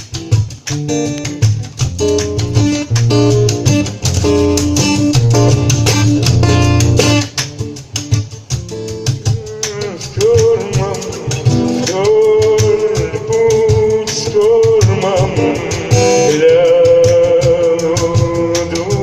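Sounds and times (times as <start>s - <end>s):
guitar chords strummed: 0.0s - 19.0s
bass line: 1.3s - 7.3s.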